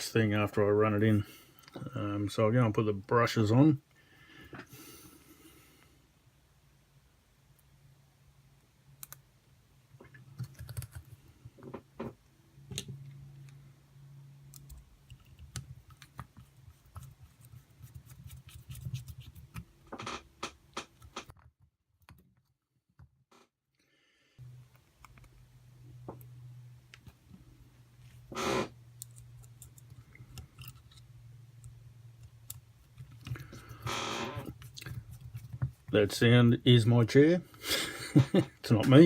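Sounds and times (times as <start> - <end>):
low steady hum: 24.4 - 39.0
small parts clicking and tapping: 28.9 - 33.8.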